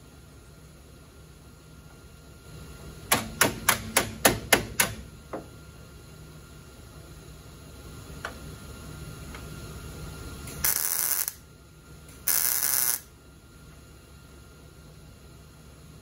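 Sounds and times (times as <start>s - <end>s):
tack welding arc bursts: 10.6s - 11.4s, 12.3s - 13.1s.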